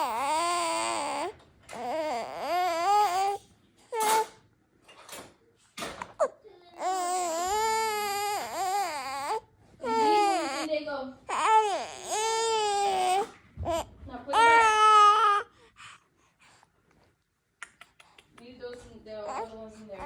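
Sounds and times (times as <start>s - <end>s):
baby crying: 0.0s - 4.4s, 6.2s - 15.6s.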